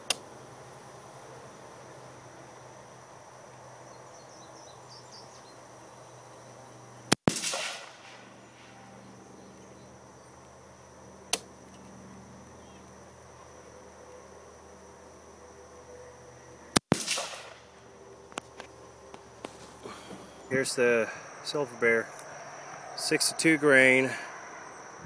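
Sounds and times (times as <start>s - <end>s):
rifle shots: 7.1s - 8.7s, 16.8s - 17.8s.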